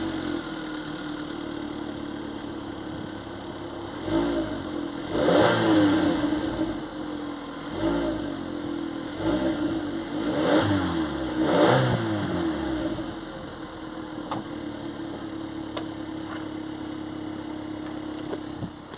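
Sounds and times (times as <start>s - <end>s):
car engine revving and idling: 0.0s - 18.9s
faint engine ticks: 0.2s - 2.0s, 14.2s - 18.9s.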